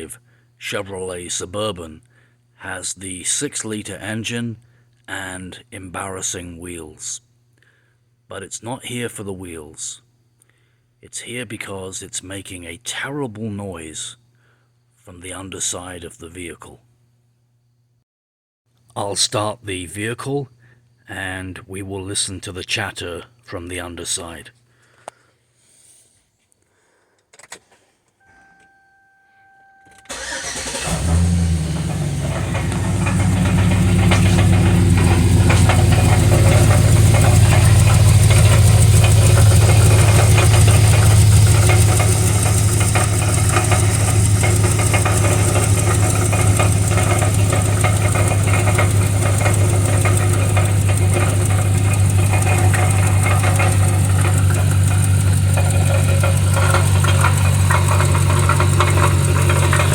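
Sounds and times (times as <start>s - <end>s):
electronic tone: 28.2s - 30.1s
engine starting and running: 30.0s - 59.9s
chattering rattle under vehicle: 30.1s - 59.9s.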